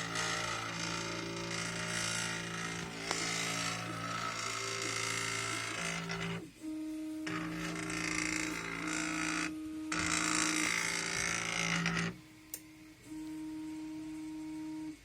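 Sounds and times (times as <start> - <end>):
stepper motors whining: 0.0 - 15.0.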